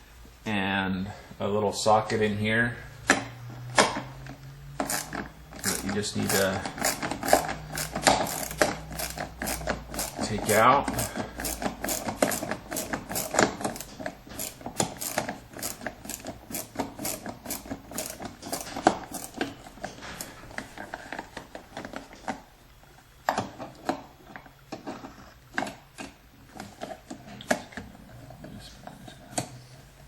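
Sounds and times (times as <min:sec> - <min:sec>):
hand tool clicking: 0:04.8 - 0:19.6.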